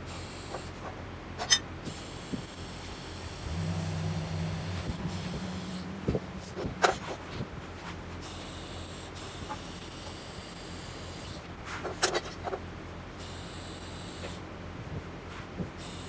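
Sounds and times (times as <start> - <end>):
welding arc hiss: 15.8 - 16.0.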